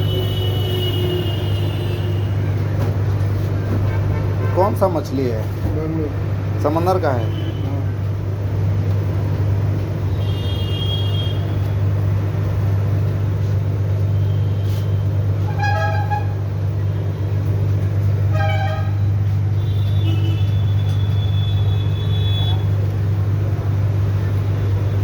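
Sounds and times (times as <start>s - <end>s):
vehicle horns honking: 0.0s - 2.5s, 3.8s - 4.8s, 10.1s - 11.5s, 14.2s - 17.1s, 18.3s - 22.8s
low engine hum of traffic: 0.0s - 25.0s.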